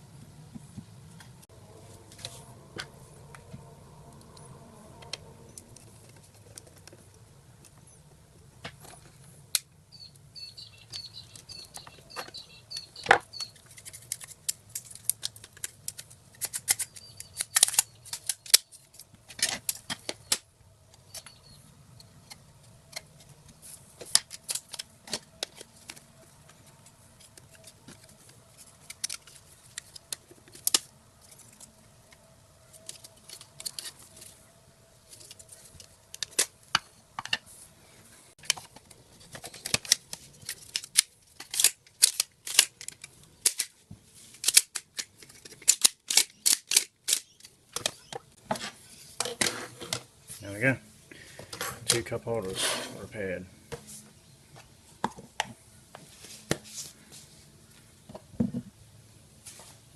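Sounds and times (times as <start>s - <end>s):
high plastic squeaks: 10.0s - 20.4s.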